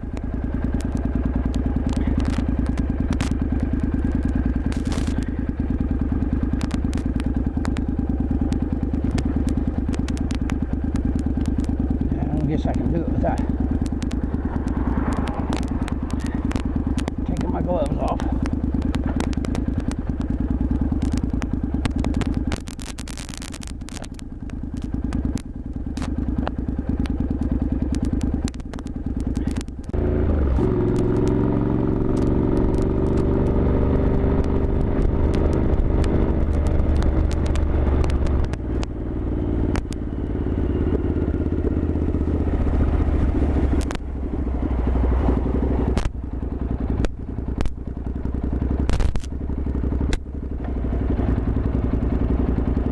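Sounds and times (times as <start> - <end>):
sharp clicks: 0.0 - 52.8
motorcycle engine: 0.0 - 52.9.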